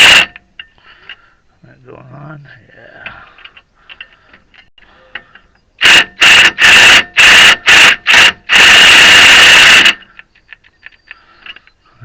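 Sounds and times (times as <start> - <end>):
cordless impact wrench bursts: 0.0 - 0.3, 5.8 - 10.1.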